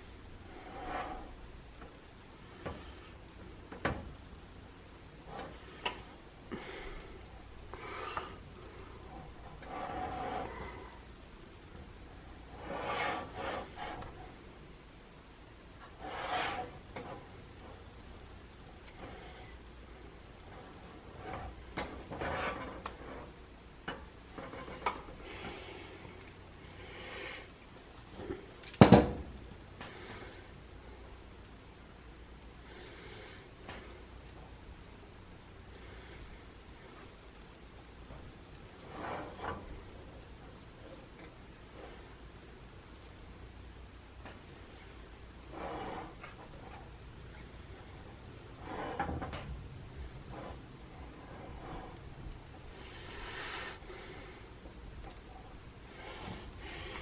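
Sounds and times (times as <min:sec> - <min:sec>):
spatula scraping sticky mixture: 0:12.0 - 0:14.3, 0:15.8 - 0:18.3.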